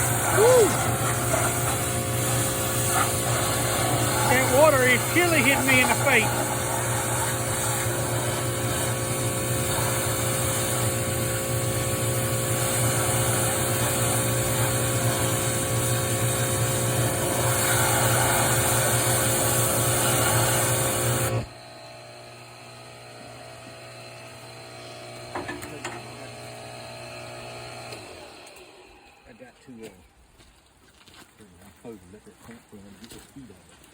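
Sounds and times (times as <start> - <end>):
pressure washer spraying: 0.0 - 21.5.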